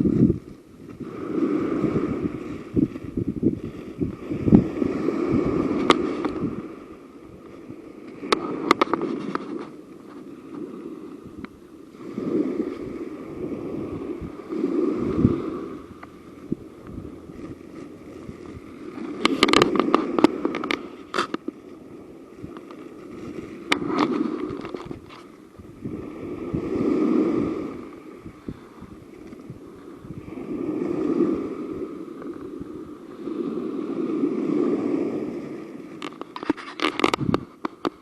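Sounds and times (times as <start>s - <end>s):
wind buffeting microphone: 0.0s - 38.0s
crackling clicks and scrapes: 5.7s - 6.5s, 7.4s - 10.6s, 16.8s - 21.7s, 22.5s - 25.4s, 35.8s - 38.0s.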